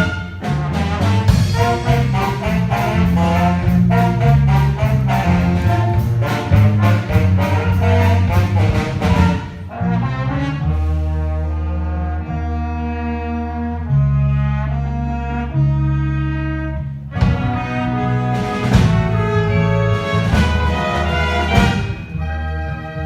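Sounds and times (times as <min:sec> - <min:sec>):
brass band playing: 0:00.0 - 0:23.0
percussion beat: 0:01.2 - 0:09.4, 0:20.0 - 0:22.2.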